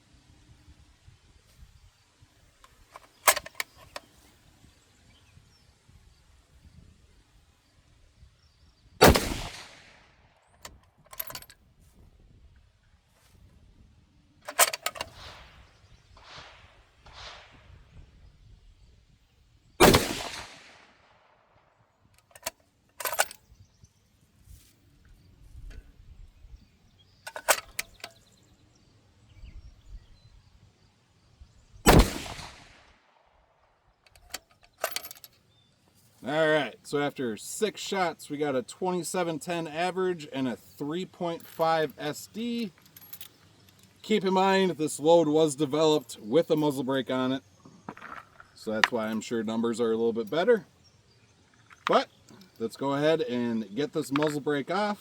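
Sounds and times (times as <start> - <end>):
metallic clicks and clacks: 2.9 - 4.0, 14.5 - 15.3, 22.2 - 23.4, 27.3 - 28.2
rifle shots with echo: 9.0 - 10.2, 16.2 - 17.8, 19.8 - 21.6, 31.9 - 33.2.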